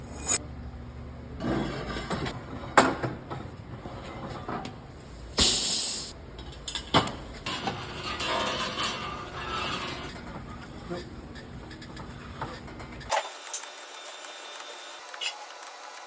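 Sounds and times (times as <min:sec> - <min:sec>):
loud hiss: 0:05.4 - 0:06.1.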